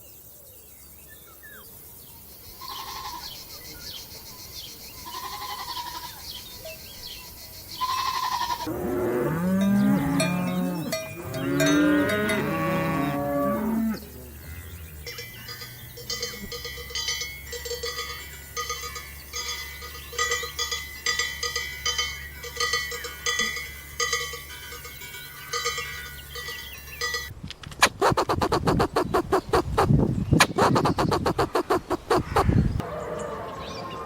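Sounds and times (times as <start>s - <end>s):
livestock bells clanking: 9.2s - 27.4s
rapid sharp pulses: 27.8s - 32.6s.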